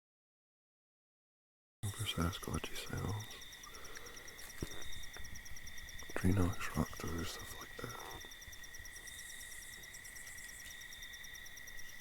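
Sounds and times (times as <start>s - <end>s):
man speaking in low voice: 1.8s - 3.4s, 6.1s - 8.3s
insects chirping: 1.8s - 12.0s.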